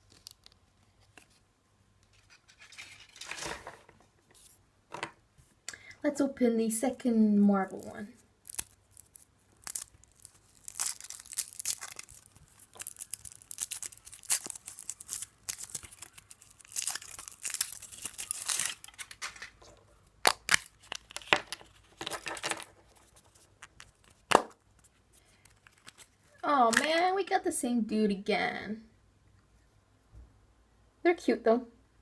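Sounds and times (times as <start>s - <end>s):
foil wrapper crinkling: 7.6s - 19.6s.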